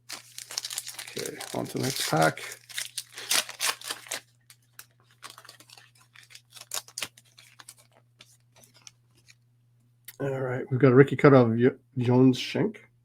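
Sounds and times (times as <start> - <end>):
cards rustling and clicking: 0.0 - 9.4
wrapper tearing and crinkling: 0.0 - 9.4.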